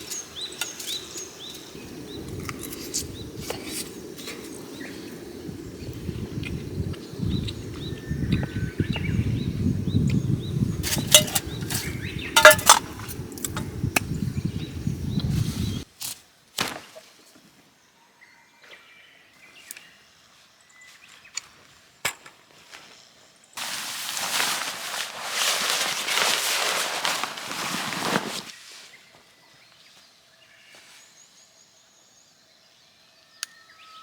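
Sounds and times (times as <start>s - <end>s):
birds chirping: 0.0s - 15.9s.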